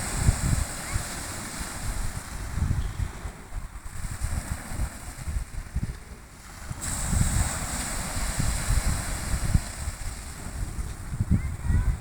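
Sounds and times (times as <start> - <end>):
sea surf hissing on shore: 0.0 - 2.6, 6.6 - 11.2
wind buffeting microphone: 0.0 - 12.0.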